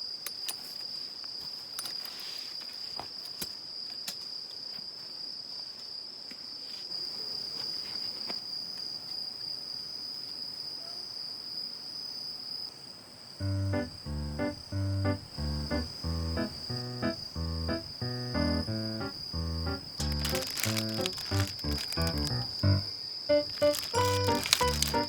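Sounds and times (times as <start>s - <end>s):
crickets trilling: 0.0s - 25.0s
music: 13.4s - 25.0s.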